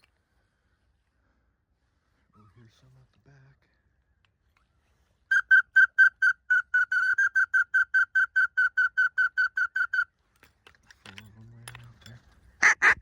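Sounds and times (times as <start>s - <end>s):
duck whistle call: 5.3s - 10.0s.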